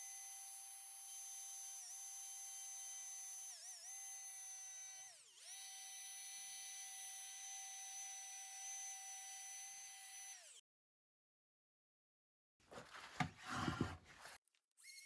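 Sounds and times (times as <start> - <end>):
die grinder whining: 0.0 - 10.6.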